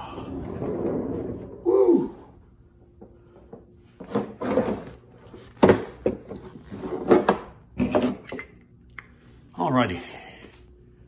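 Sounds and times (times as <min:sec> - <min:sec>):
scrapes and knocks of moving things: 0:02.9 - 0:08.6.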